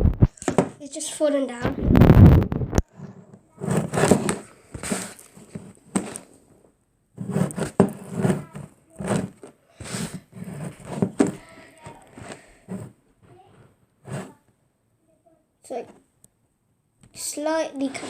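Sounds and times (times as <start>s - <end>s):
handling knocks and rustles: 3.7s - 6.6s, 7.2s - 14.4s.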